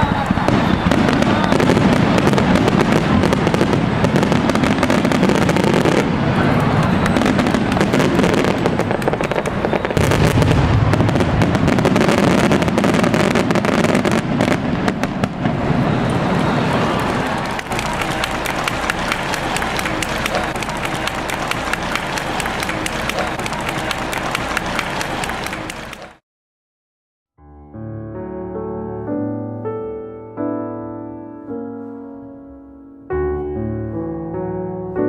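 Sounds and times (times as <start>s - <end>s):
fireworks bangs: 0.0s - 26.2s.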